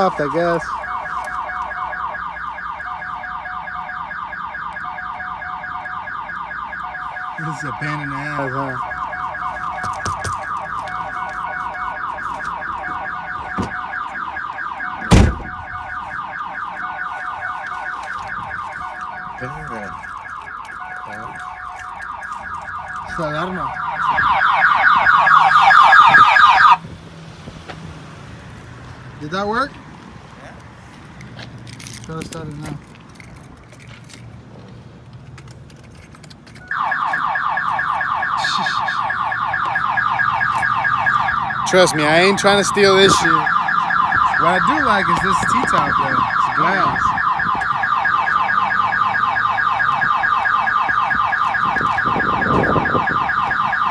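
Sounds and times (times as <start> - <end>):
car alarm warbling: 0.0 - 26.8, 36.6 - 53.9
loud thump: 15.0 - 15.7.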